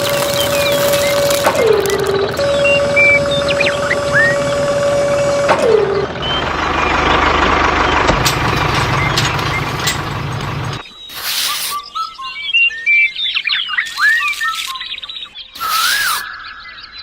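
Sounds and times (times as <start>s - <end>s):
small motor whining: 0.0s - 6.4s, 8.4s - 11.8s, 13.9s - 14.8s, 15.6s - 16.2s
mechanical rumble with clicks: 0.0s - 10.8s.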